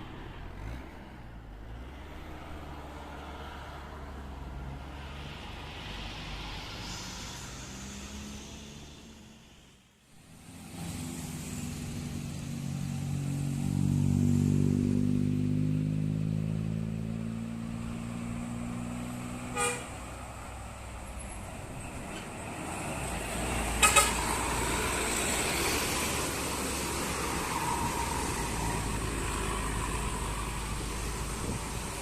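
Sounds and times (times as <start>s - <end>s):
heavy vehicle engine passing: 0.0s - 32.0s
traffic approaching: 0.0s - 32.0s
vehicle horn toots: 19.5s - 20.0s, 23.8s - 24.3s.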